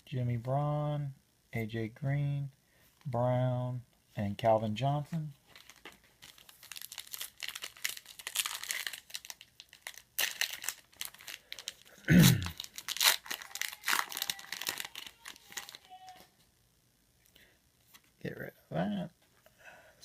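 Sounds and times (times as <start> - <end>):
plastic wrapper tearing and crinkling: 5.4 - 16.3.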